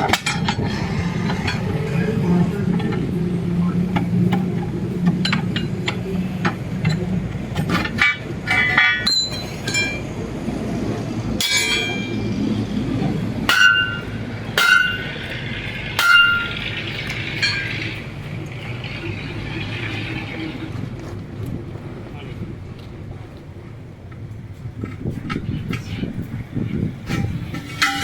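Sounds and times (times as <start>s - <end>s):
steady low hum: 0.0s - 28.0s
metal clinking: 7.6s - 10.1s, 11.4s - 12.4s, 27.1s - 28.0s
ringing metal strikes: 8.0s - 10.1s, 11.4s - 12.4s, 13.4s - 17.9s, 27.1s - 28.0s.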